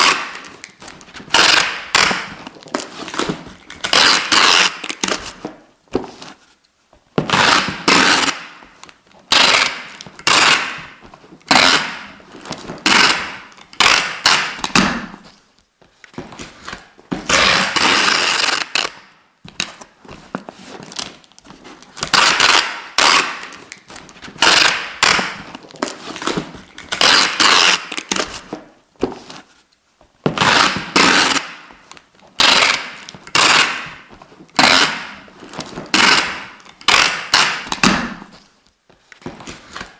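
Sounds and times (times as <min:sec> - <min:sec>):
adhesive tape ripping off roll: 0:00.0 - 0:05.4, 0:07.3 - 0:08.6, 0:09.3 - 0:15.2, 0:17.3 - 0:19.8, 0:22.0 - 0:28.4, 0:30.4 - 0:31.7, 0:32.4 - 0:38.4.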